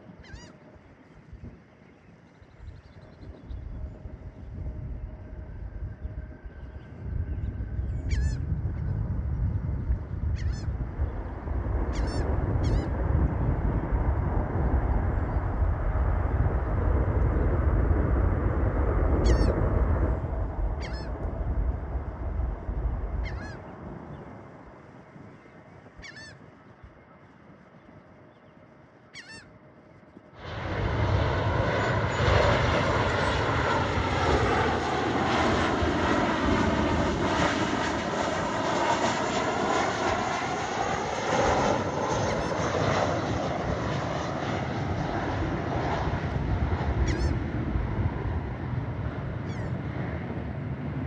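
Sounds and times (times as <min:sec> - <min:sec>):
jet engines rumbling: 0:00.0 - 0:51.0
birds honking: 0:20.8 - 0:21.1, 0:29.2 - 0:29.5, 0:47.0 - 0:47.4.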